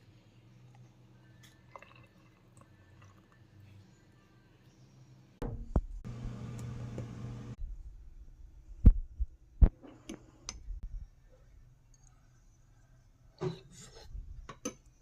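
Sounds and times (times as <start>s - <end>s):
microwave oven humming: 6.0s - 7.6s.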